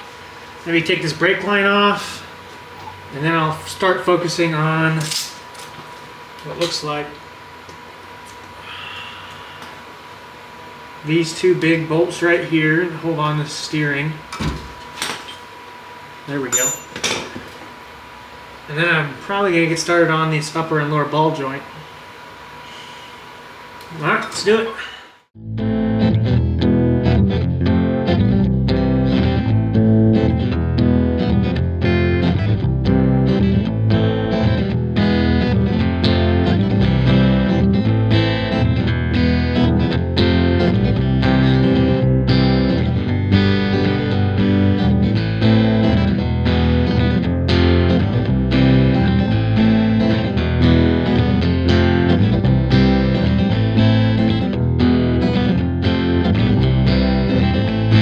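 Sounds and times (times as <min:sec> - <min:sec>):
distorted electric guitar music: 0:25.4 - 0:58.0.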